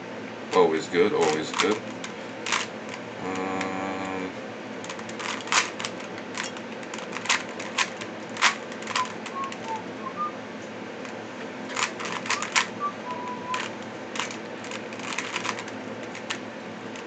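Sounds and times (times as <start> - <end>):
puzzle cube clicking: 1.2 - 1.9, 4.8 - 9.8, 11.8 - 16.4.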